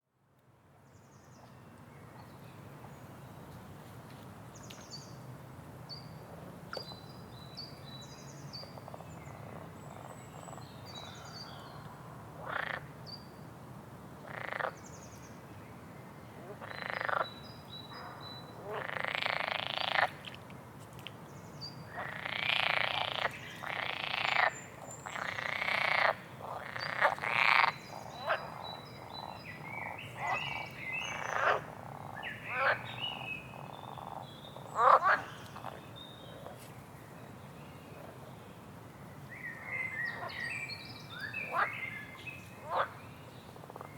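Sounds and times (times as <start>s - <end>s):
frogs croaking: 12.4s - 13.0s, 14.2s - 14.8s, 16.4s - 20.3s, 21.9s - 36.5s, 41.2s - 43.0s.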